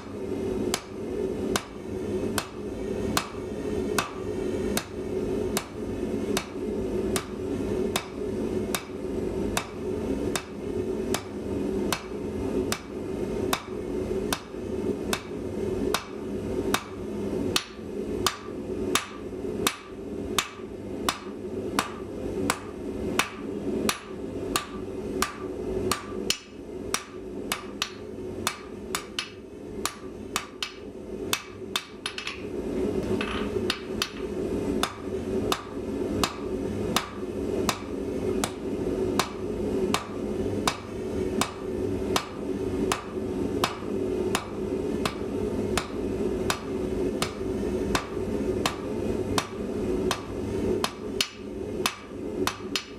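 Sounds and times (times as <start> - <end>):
steady low hum: 0.0 - 52.9
hammer striking steel on anvil: 4.0 - 4.2, 17.6 - 32.4, 39.2 - 40.8, 42.2 - 45.2.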